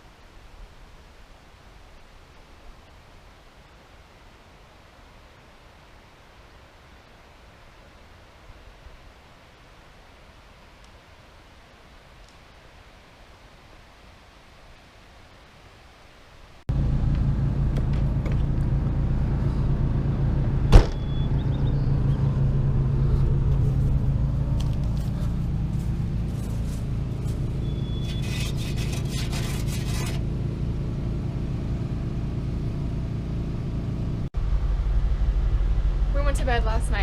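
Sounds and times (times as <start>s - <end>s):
engine humming: 16.7s - 37.0s.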